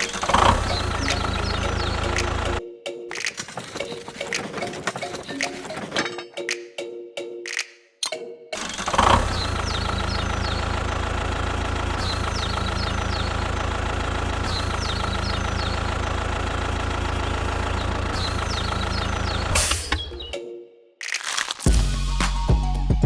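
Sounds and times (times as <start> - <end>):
tractor engine idling: 9.8 - 19.6.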